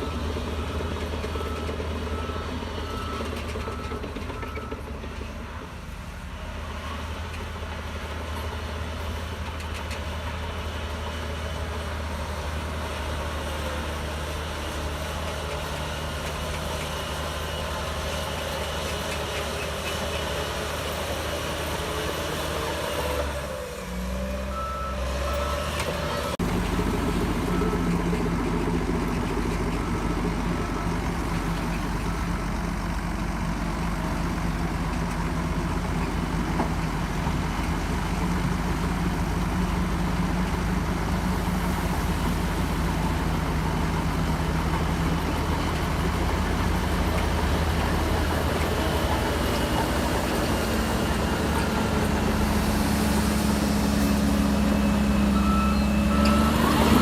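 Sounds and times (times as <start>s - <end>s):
bulldozer diesel engine running: 0.0s - 57.0s
reversing alarm beeping: 24.5s - 26.4s, 53.5s - 57.0s.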